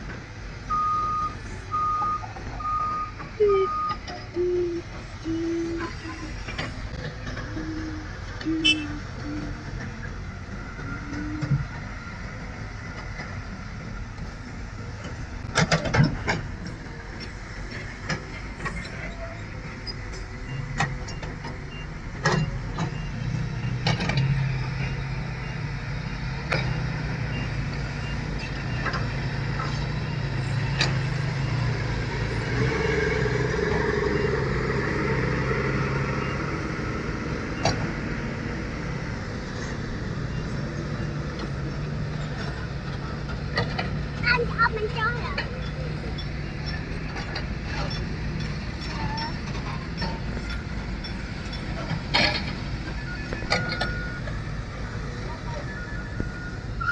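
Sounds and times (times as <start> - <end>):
heavy machinery engine running: 0.0 - 56.9
sharp clanks and knocks: 15.0 - 19.1, 45.2 - 54.4.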